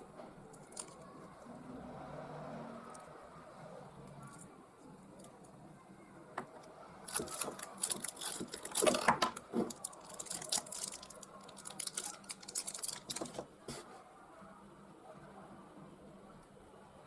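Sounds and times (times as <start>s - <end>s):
crinkly rustling: 0.5s - 1.5s, 7.0s - 13.9s.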